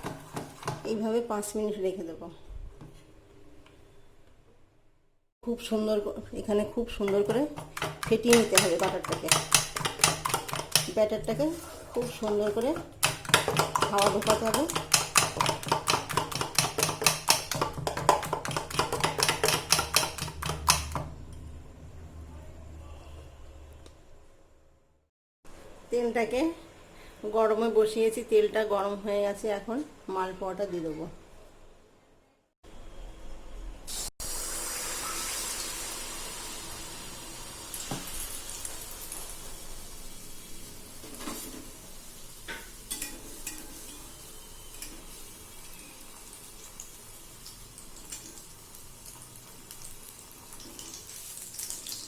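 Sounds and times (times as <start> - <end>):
utensil beating batter in a bowl: 0.0 - 1.2, 6.4 - 21.1
batter sizzling in hot oil: 34.0 - 52.0.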